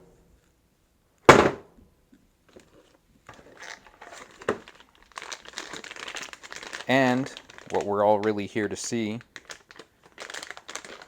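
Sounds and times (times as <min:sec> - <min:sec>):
handling rustling: 0:02.5 - 0:08.5.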